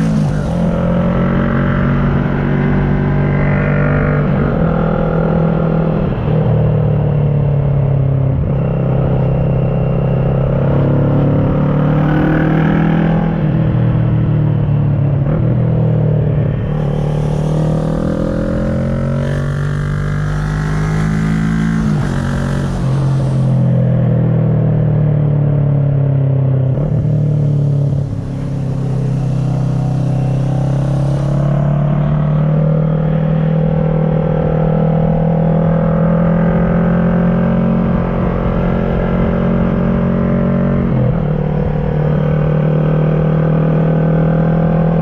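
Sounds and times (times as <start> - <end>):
motorcycle engine accelerating: 0.0 - 45.0.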